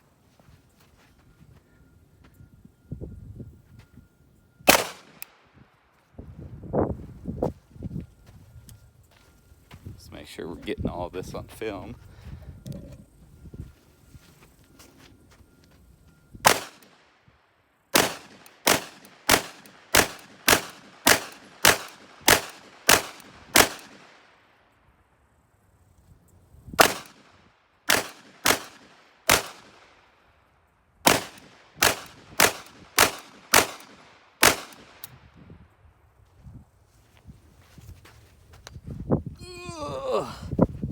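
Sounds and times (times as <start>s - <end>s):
pistol shots: 4.7s - 5.3s, 16.5s - 17.0s, 17.9s - 24.2s, 26.8s - 27.3s, 27.9s - 30.0s, 31.0s - 35.1s.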